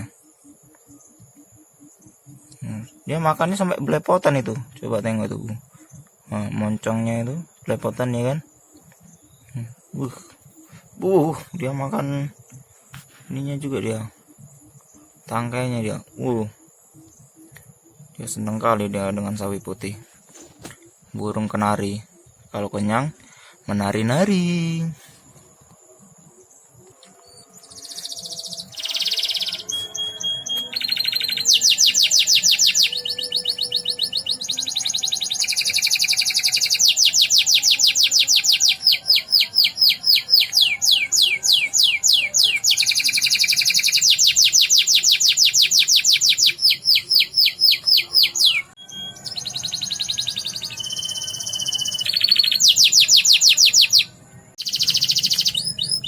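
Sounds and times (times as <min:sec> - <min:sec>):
canary singing rolling trills: 0:13.4 - 0:56.0.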